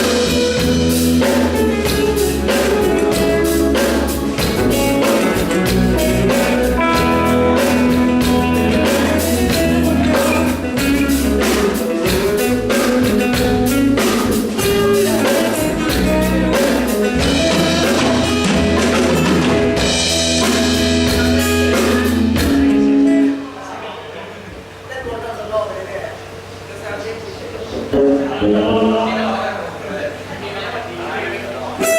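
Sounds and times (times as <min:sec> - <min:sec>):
drum kit beat: 0:00.0 - 0:23.4
electric guitar: 0:00.0 - 0:23.5, 0:27.9 - 0:29.4
bass: 0:00.0 - 0:23.6, 0:27.6 - 0:31.9.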